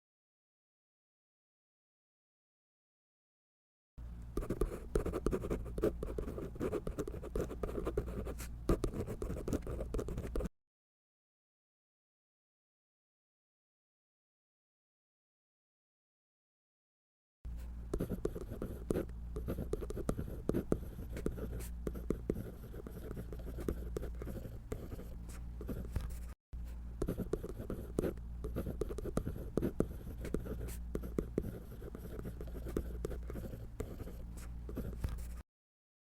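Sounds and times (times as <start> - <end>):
steady low hum: 4.0 - 10.5, 17.5 - 35.4
drawing tool scratching paper: 4.4 - 10.5, 18.0 - 26.4, 27.0 - 35.4.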